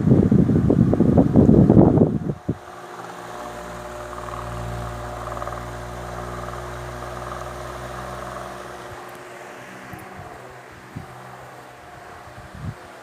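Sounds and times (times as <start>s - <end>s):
air rushing from fan blades: 0.0s - 13.0s
fan motor hum: 0.0s - 13.0s.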